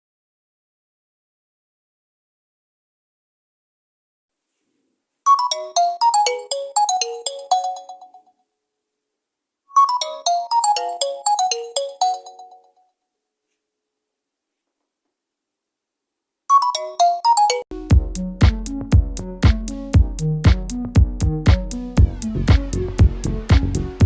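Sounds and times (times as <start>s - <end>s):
phone ringtone melody: 5.3s - 8.4s, 9.7s - 12.9s, 16.5s - 19.0s.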